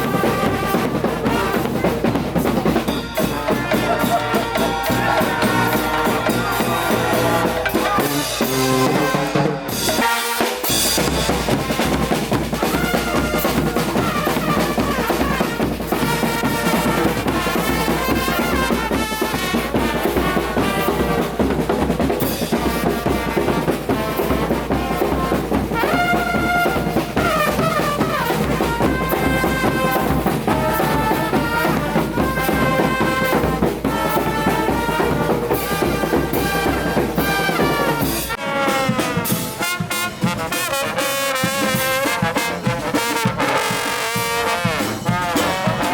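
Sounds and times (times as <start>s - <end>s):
bass drum beat: 0.0s - 10.0s
drums: 0.0s - 45.9s
trumpets and trombones: 0.0s - 45.9s.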